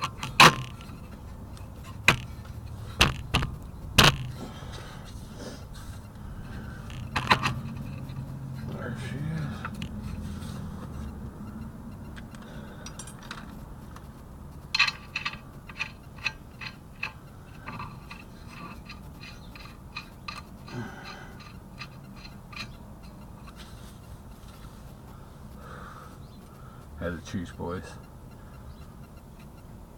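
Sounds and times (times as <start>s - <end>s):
hand tools clicking on metal: 0.0s - 5.2s, 6.0s - 10.2s, 10.8s - 24.2s.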